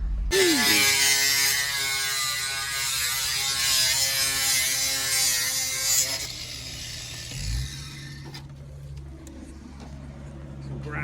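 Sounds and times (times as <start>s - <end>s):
small motor buzzing: 0.3s - 8.5s
low engine-like hum: 6.2s - 11.0s.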